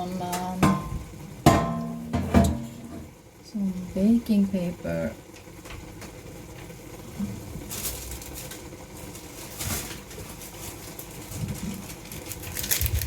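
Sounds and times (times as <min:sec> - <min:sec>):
baking paper crinkling: 0:07.6 - 0:13.0.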